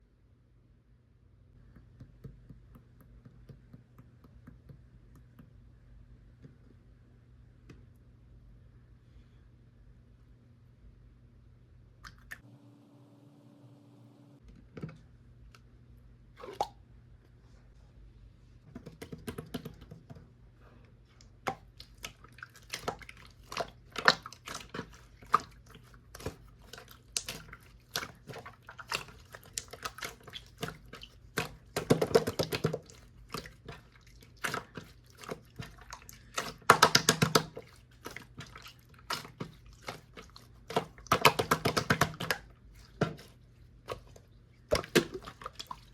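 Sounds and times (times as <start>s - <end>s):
slime squelching and popping: 21.3s - 45.9s.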